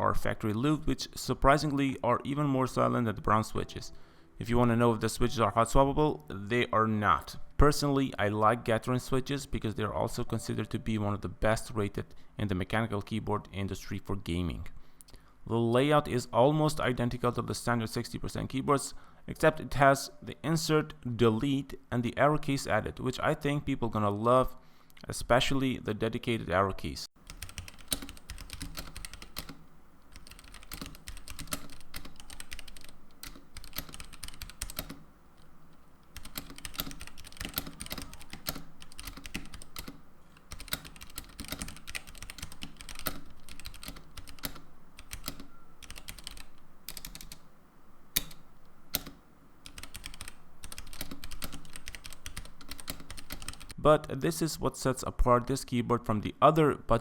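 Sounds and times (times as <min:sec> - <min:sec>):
mechanical keyboard typing: 0:27.2 - 0:35.0, 0:36.0 - 0:47.4, 0:48.2 - 0:53.8.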